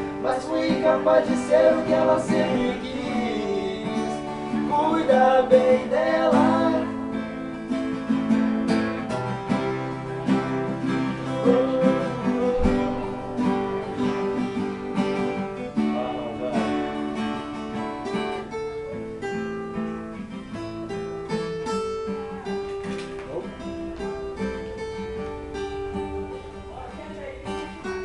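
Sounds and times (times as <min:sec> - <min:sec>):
person singing: 0:00.0 - 0:07.2, 0:10.8 - 0:14.8
acoustic guitar strumming: 0:00.0 - 0:28.0.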